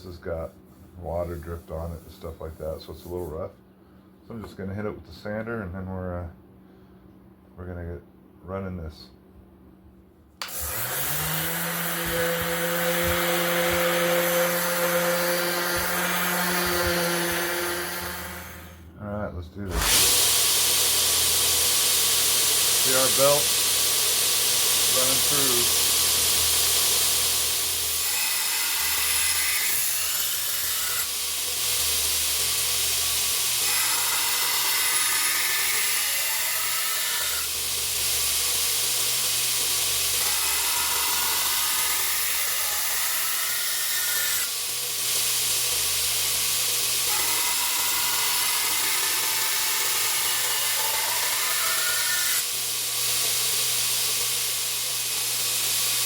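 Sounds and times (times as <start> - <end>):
belt grinder motor hum: 10.4 - 18.8, 19.7 - 56.0.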